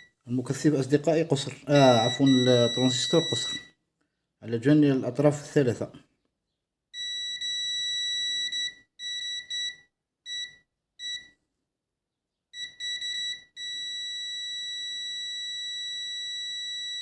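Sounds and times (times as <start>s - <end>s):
multimeter continuity beeping: 0.0s - 0.6s, 1.4s - 3.8s, 7.0s - 11.3s, 12.6s - 17.0s.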